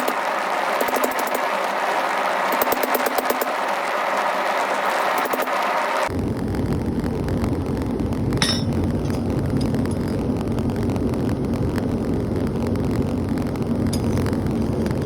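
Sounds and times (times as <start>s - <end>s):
forge rushing noise: 0.0s - 15.0s
metallic clink: 8.4s - 8.7s.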